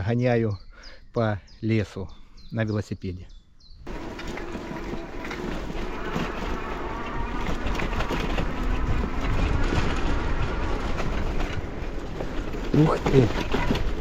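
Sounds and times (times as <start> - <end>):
wind buffeting microphone: 3.3 - 14.0
bicycle tyres on dirt path: 3.8 - 14.0
bike rattling over bumps: 3.9 - 14.0.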